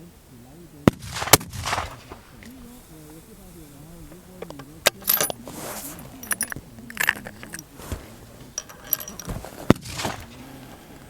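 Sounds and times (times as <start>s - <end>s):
sharp metallic clicks and clinks: 4.4s - 5.4s, 6.0s - 10.4s.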